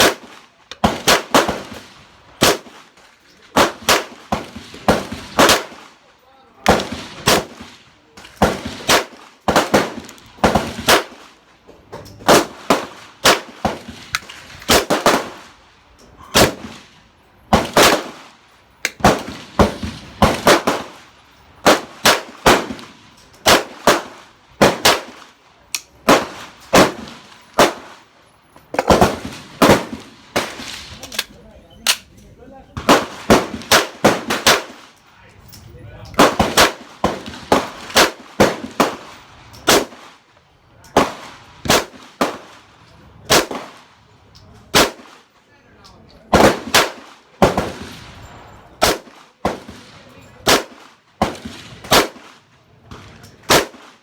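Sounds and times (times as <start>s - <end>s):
pistol shots: 0.0s - 1.8s, 3.6s - 5.9s, 6.7s - 7.7s, 8.4s - 11.2s, 12.2s - 15.4s, 17.5s - 18.2s, 18.8s - 21.0s, 21.6s - 27.9s, 28.7s - 31.3s, 39.7s - 40.1s, 41.0s - 42.5s, 43.3s - 43.8s, 46.3s - 47.8s, 48.8s - 49.8s, 50.4s - 52.3s, 53.5s - 54.0s.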